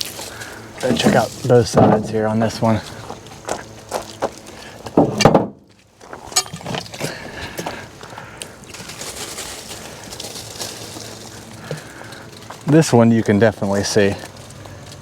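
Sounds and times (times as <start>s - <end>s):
faint scraping and rustling: 0.0s - 4.9s, 8.6s - 15.0s
wooden boards thumping: 0.9s - 2.2s, 4.9s - 5.6s.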